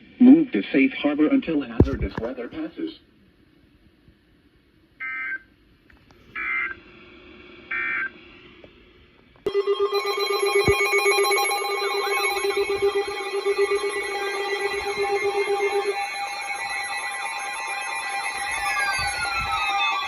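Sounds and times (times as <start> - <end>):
harsh data bursts: 9.5 - 20.0
pulsing electronic alert tone: 9.5 - 20.0.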